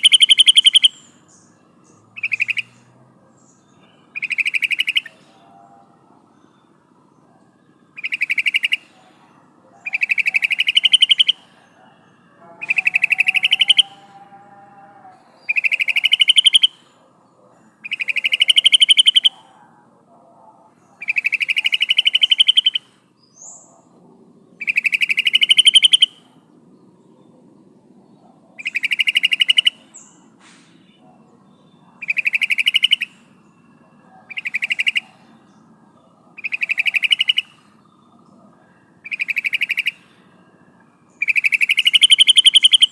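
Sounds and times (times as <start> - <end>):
bird chattering call: 0.0 - 2.9, 3.5 - 6.6, 8.0 - 9.1, 9.8 - 14.4, 15.4 - 19.6, 20.8 - 23.7, 24.6 - 26.3, 28.5 - 35.6, 36.2 - 38.0, 39.0 - 40.2, 41.1 - 42.9
faint bird calls: 0.0 - 42.9.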